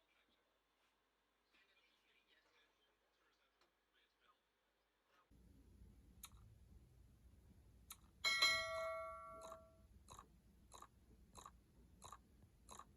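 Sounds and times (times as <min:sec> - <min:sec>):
metallic ring: 0:08.2 - 0:09.8.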